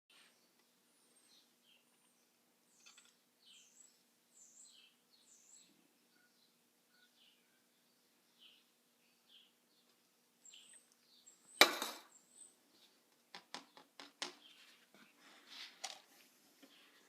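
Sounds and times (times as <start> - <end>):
faint bird chirps: 0.1 - 12.6.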